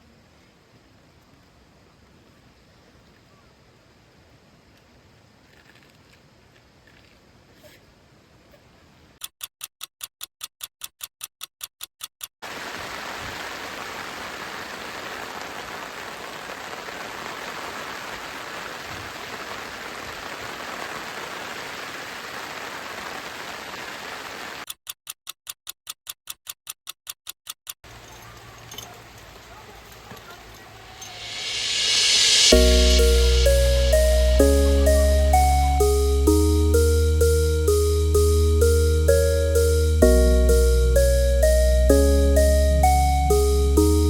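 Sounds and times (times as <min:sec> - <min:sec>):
steady rushing noise: 0:31.2 - 0:35.5
loud ticking pulse: 0:31.2 - 0:44.0.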